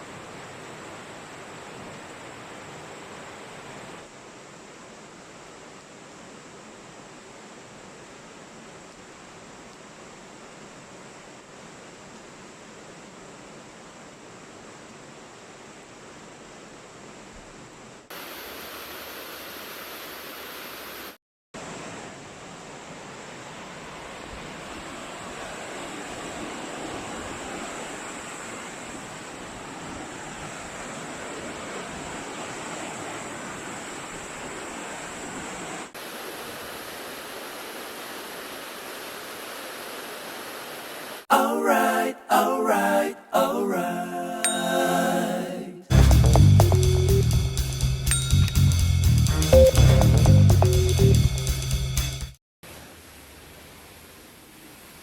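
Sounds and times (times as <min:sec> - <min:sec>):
steady rain: 0:00.0 - 0:41.3, 0:52.6 - 0:55.0
music with singing: 0:43.4 - 0:51.8
rain falling: 0:45.9 - 0:48.2.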